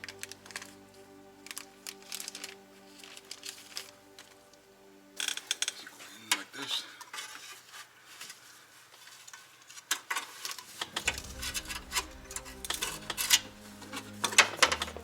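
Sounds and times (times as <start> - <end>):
steady low tone: 0.0 - 6.0, 11.0 - 15.0.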